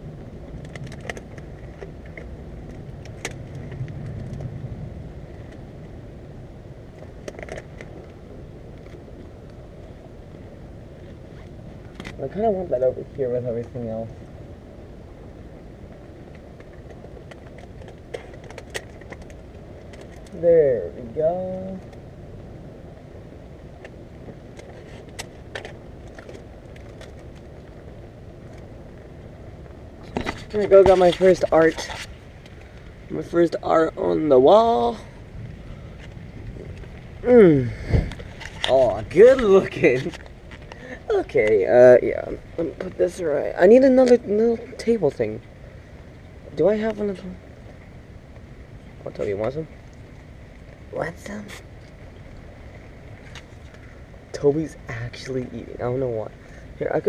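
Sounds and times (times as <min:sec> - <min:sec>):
steady low rumble: 0:00.0 - 0:57.0
handling clicks and crinkles: 0:00.5 - 0:04.6, 0:16.3 - 0:20.4.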